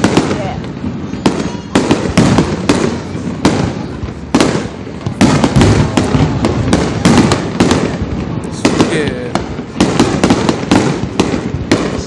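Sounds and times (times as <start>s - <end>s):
fireworks bangs: 0.0s - 12.0s
rumbling echo: 0.0s - 12.0s.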